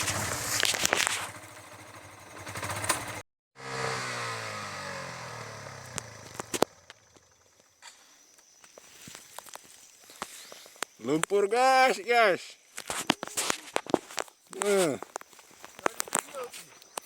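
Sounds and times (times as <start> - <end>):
small engine winding down: 0.0 - 7.4.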